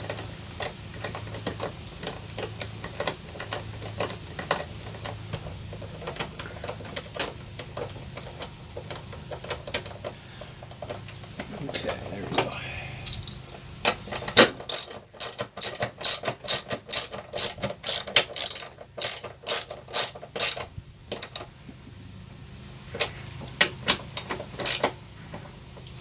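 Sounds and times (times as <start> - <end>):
hand ratchet clicking: 14.7 - 20.6, 21.2 - 21.5, 24.2 - 24.9.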